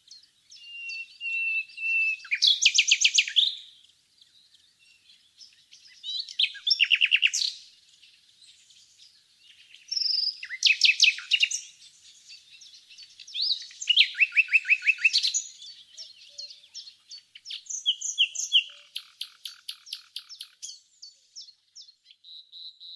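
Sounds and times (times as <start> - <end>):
nightingale singing: 0.0 - 22.9.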